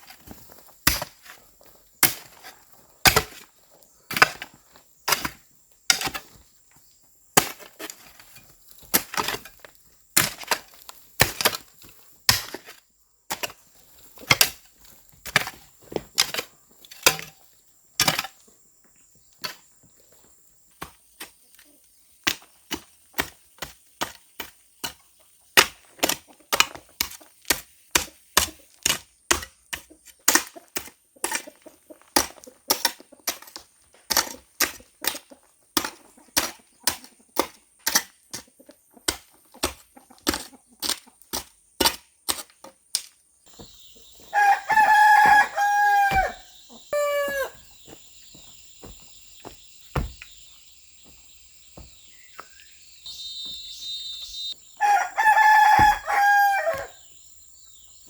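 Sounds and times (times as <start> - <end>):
hand tool striking: 0.9 - 1.4, 2.0 - 2.5, 3.1 - 3.4, 10.2 - 11.7, 12.3 - 12.7, 14.2 - 14.7, 47.3 - 52.5, 55.8 - 56.1
rooster crowing: 44.1 - 47.8, 53.1 - 57.2
single knock: 48.8 - 50.3.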